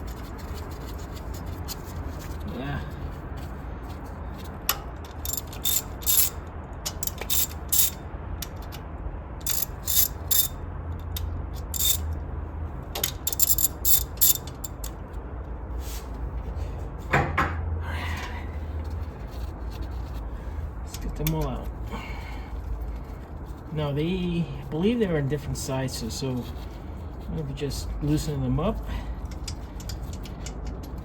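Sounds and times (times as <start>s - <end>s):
ratchet wrench clicking: 4.7s - 8.8s, 9.4s - 12.1s, 13.0s - 15.0s, 29.2s - 31.0s.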